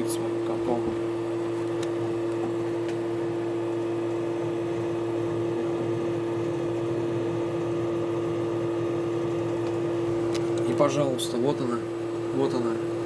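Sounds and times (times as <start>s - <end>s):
computer humming: 0.0s - 13.0s.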